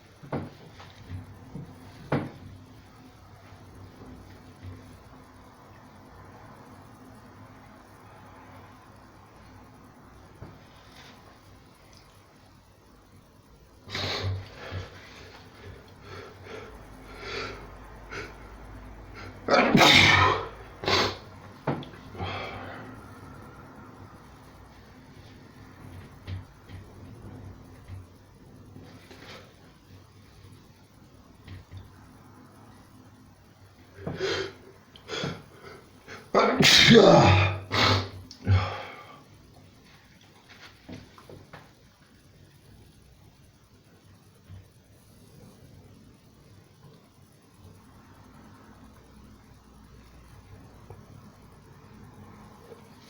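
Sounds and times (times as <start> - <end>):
person sneezing: 13.9 - 14.9, 19.2 - 21.3, 36.1 - 39.0.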